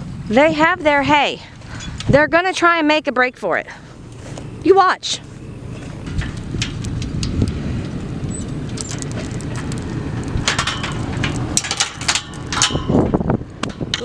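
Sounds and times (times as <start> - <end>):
vehicle engine rumbling: 0.0 - 14.0
sharp clicks and knocks: 5.8 - 14.0.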